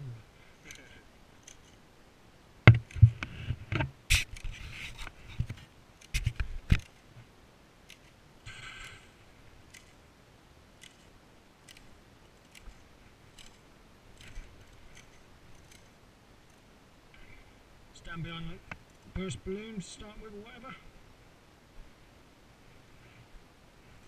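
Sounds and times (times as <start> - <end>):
faint clicks: 7.8 - 9.1, 9.7 - 10.0.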